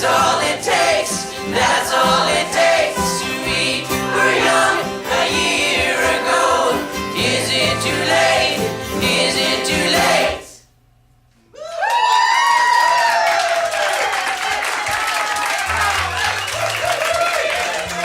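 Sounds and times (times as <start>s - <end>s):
choir and band playing: 0.0s - 10.6s
crowd voices: 15.6s - 18.0s.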